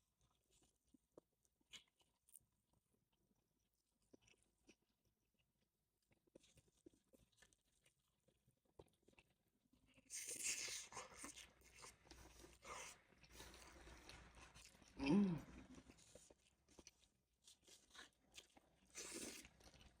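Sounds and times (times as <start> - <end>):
crunching and chewing tacos: 0.0 - 20.0
person humming: 15.0 - 15.5.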